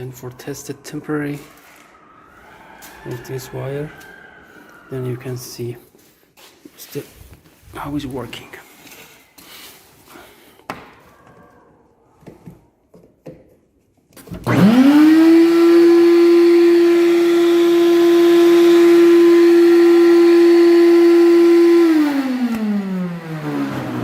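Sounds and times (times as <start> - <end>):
vacuum motor whining: 14.2 - 24.0.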